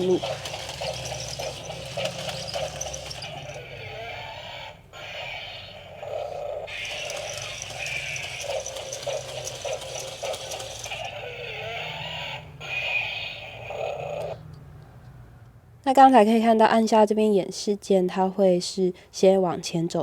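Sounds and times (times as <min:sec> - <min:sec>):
leg mechanism clicking and rattling: 0:00.0 - 0:03.8, 0:06.7 - 0:11.1
toy motor humming: 0:00.0 - 0:14.4.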